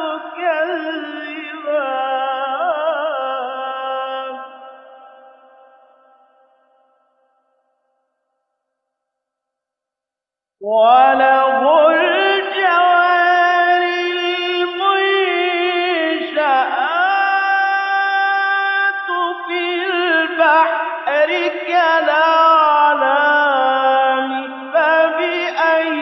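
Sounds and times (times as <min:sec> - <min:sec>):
man chanting recitation: 0:00.0 - 0:04.6, 0:10.6 - 0:26.0.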